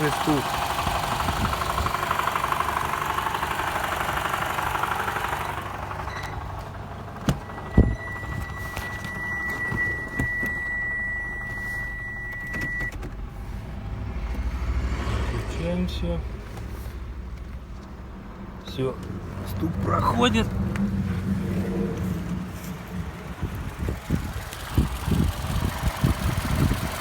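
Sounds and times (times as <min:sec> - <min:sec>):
car engine idling: 0:00.0 - 0:27.0
sharp thumps: 0:07.2 - 0:10.8.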